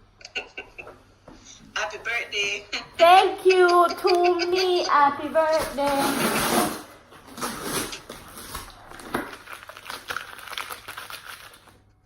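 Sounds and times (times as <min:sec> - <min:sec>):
paper and packaging rustling: 0:04.3 - 0:12.0.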